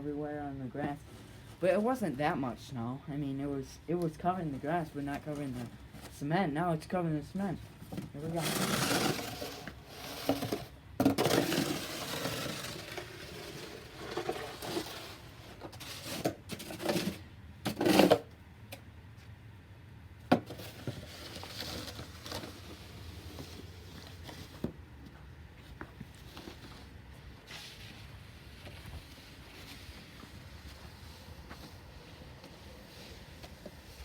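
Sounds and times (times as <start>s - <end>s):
snow shovel scraping concrete: 8.1s - 18.3s, 20.5s - 24.7s, 26.1s - 34.0s.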